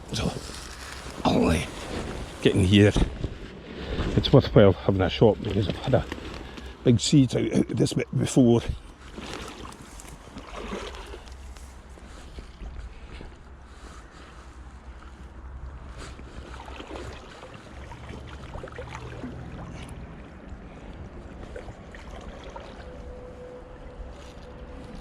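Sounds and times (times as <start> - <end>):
river water sloshing and gurgling: 0.0 - 7.5, 8.4 - 25.0
wind rumbling on microphone: 0.0 - 7.6.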